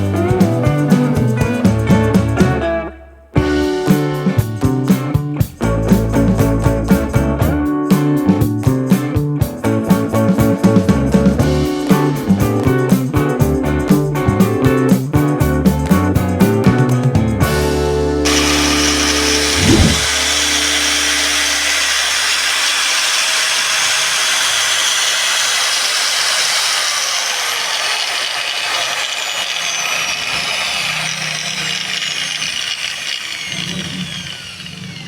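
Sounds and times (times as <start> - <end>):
angle grinder whining: 18.2 - 35.0.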